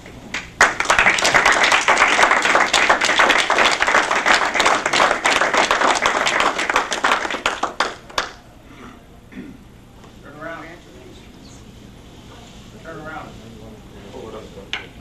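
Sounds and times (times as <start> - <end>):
audience applauding: 0.3 - 8.4.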